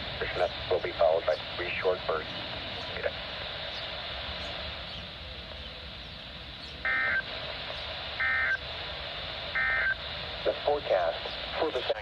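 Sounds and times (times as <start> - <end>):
radio hiss: 0.0 - 12.0
digital data tones: 6.8 - 7.4, 9.5 - 10.0.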